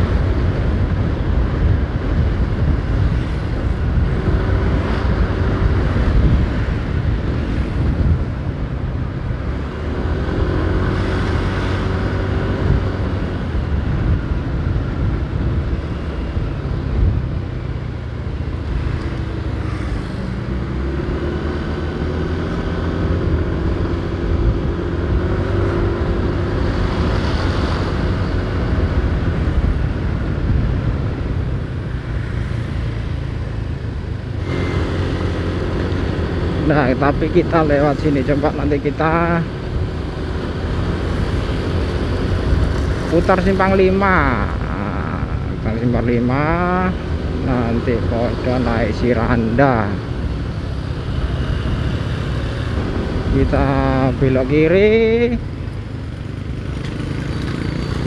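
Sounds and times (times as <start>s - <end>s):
wind and road noise: 0.0s - 58.0s
motorcycle engine revving: 9.1s - 13.9s, 17.9s - 58.0s.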